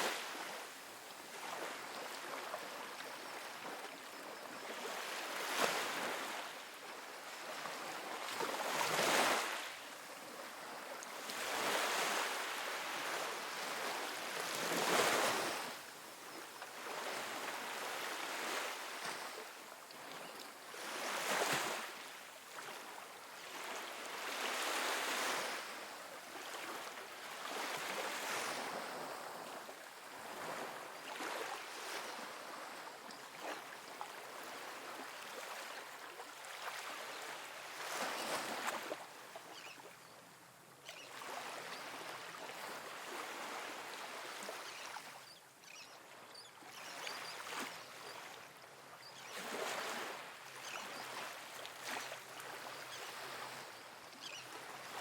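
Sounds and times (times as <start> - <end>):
ocean waves splashing on beach: 0.0 - 0.7.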